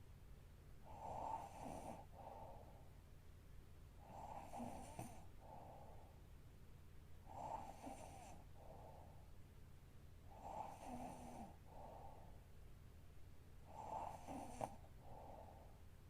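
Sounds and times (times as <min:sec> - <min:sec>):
woman snoring faintly: 0:04.0 - 0:05.3, 0:10.4 - 0:12.1, 0:13.7 - 0:15.5.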